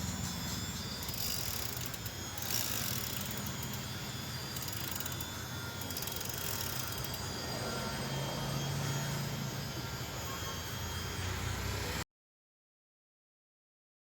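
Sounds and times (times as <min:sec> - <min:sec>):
bike freewheel ratcheting clicks: 0:00.0 - 0:07.2
steady low hum: 0:00.0 - 0:12.0.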